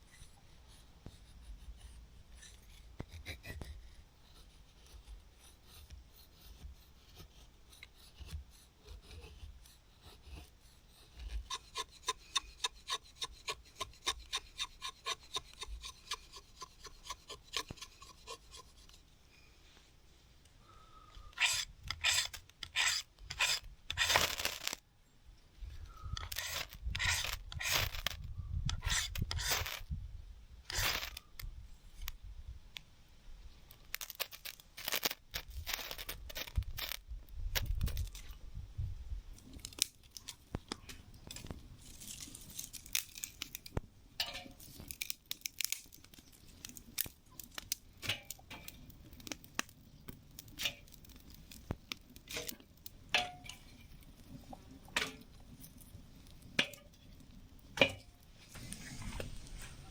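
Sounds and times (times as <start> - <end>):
rustling and scraping of handling: 0.0 - 24.8, 25.5 - 30.0, 30.6 - 32.2, 33.5 - 38.5, 39.3 - 59.9.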